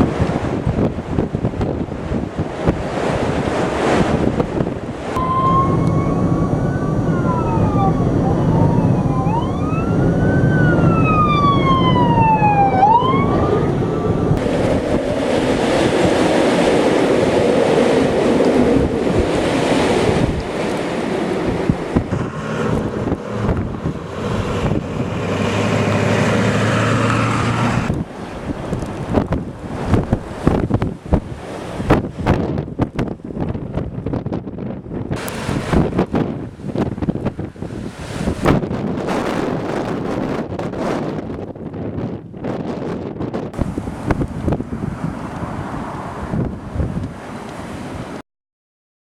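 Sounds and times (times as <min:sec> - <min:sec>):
steady rushing noise: 0:00.0 - 0:48.2
emergency vehicle siren wailing: 0:05.2 - 0:28.0.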